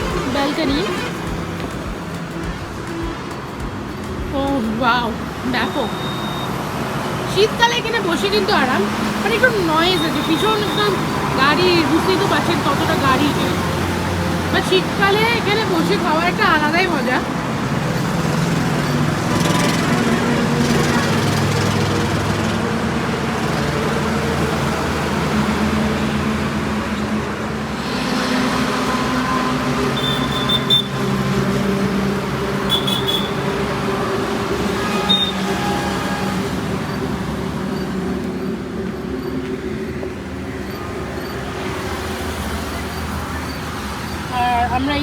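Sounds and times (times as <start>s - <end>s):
highway traffic passing: 0.0s - 45.0s
short high-pitched beeps: 5.6s - 6.6s.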